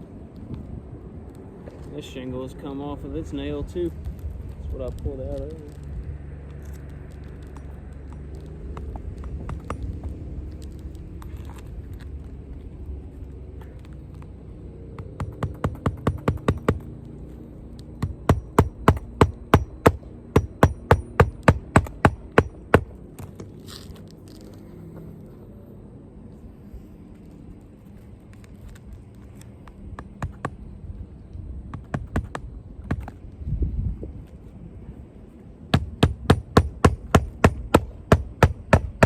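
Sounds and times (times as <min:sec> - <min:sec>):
hammer tapping nail: 0:08.8 - 0:09.9, 0:15.0 - 0:16.9, 0:18.0 - 0:23.4, 0:31.7 - 0:33.1, 0:35.7 - 0:39.0
hammer blows on roof nail: 0:15.0 - 0:16.8, 0:18.0 - 0:22.9, 0:31.7 - 0:33.1, 0:35.7 - 0:39.0.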